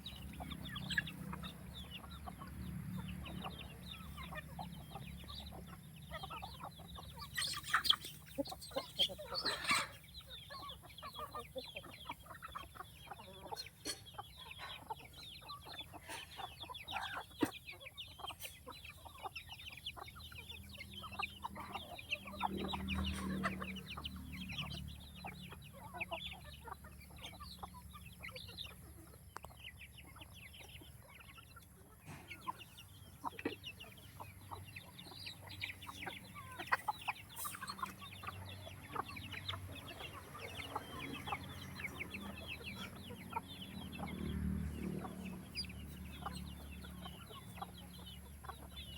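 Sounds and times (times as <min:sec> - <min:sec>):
chickens clucking: 0:00.0 - 0:48.9.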